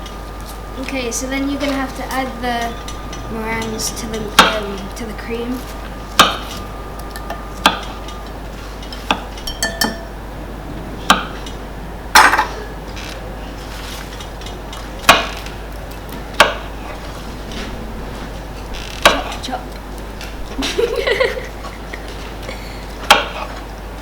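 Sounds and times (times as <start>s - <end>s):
utensils knocking against a bowl: 9.1s - 10.2s.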